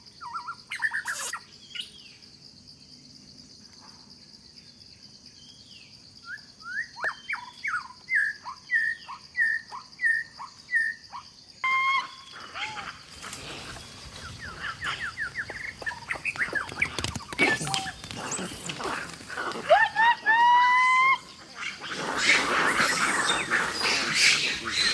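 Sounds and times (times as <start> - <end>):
high insect drone: 0.0 - 6.6, 7.4 - 24.9
short bird chirps: 0.8 - 1.9.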